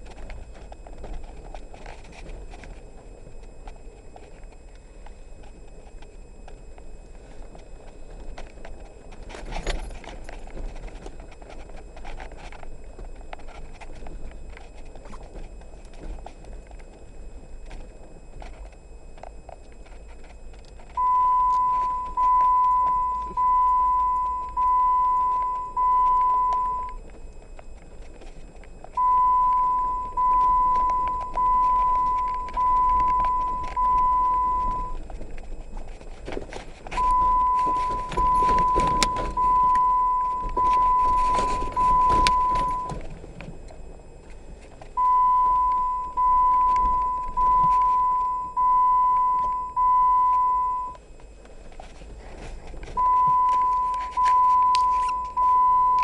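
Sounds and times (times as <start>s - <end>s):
rustling noise: 0.0s - 56.0s
electronic beeper long beeps: 20.9s - 27.5s, 28.9s - 35.0s, 36.9s - 43.0s, 45.0s - 51.0s, 53.0s - 56.0s.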